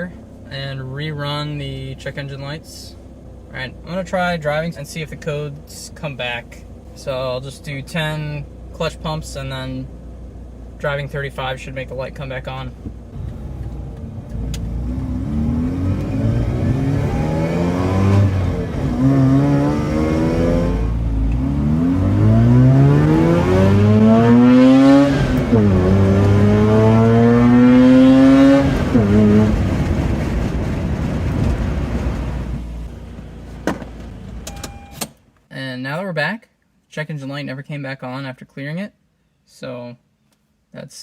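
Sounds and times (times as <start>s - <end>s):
rotary engine accelerating: 13.1s - 32.9s.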